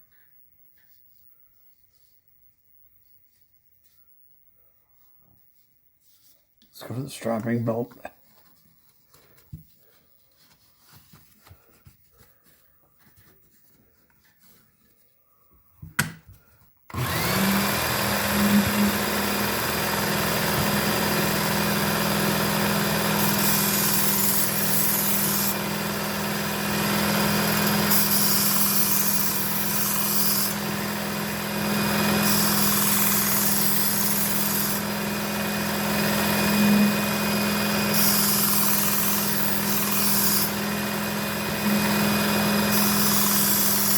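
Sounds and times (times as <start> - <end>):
belt sharpener motor hum: 16.9 - 43.9.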